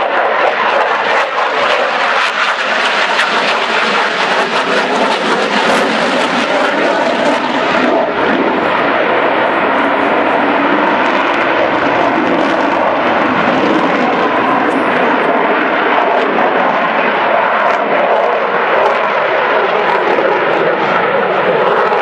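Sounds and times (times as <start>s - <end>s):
jet engines in flight: 0.0s - 22.0s.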